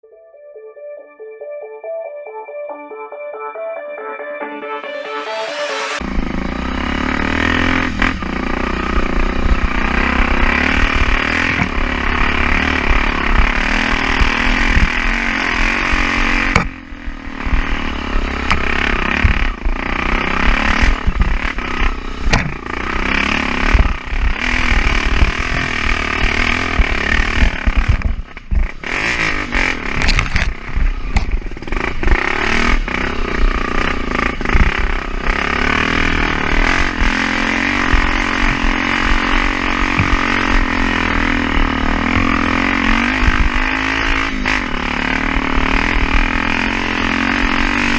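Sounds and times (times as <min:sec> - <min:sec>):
motorcycle engine revving: 0:05.6 - 0:47.9.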